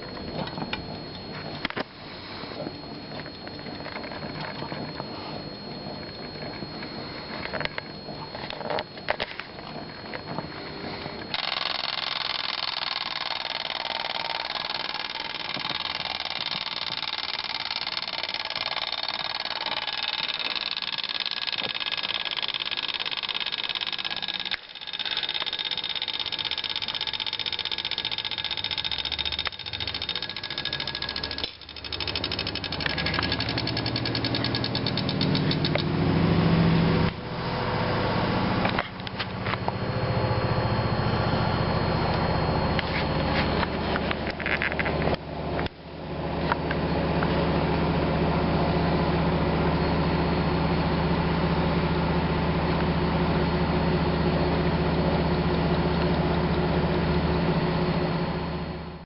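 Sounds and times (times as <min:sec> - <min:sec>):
alarm clock bell ringing: 0:11.3 - 0:35.0.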